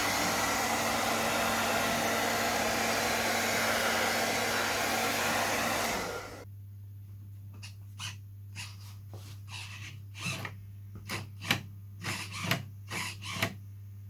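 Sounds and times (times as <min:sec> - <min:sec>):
low electrical hum: 0:06.4 - 0:12.1, 0:13.6 - 0:14.0.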